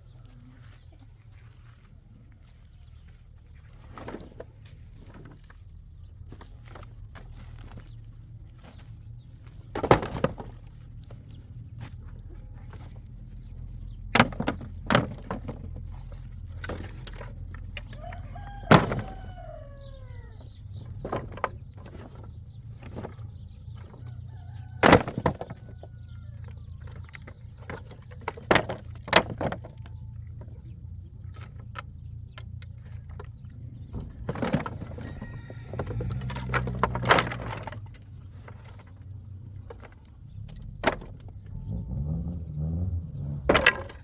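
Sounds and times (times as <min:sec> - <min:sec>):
sharp knocks and clatters: 0:09.4 - 0:11.2, 0:12.7 - 0:30.5, 0:31.2 - 0:41.6, 0:43.4 - 0:44.0
rooster crowing: 0:17.8 - 0:20.5, 0:24.0 - 0:26.8, 0:34.7 - 0:36.7.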